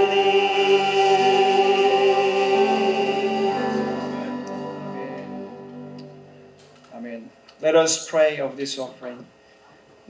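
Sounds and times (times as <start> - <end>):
choir and instruments holding a chord: 0.0 - 6.6.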